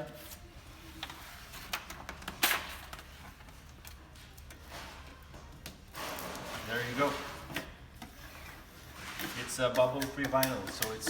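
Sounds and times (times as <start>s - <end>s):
sticker peeling clicks and rustles: 9.1s - 11.0s.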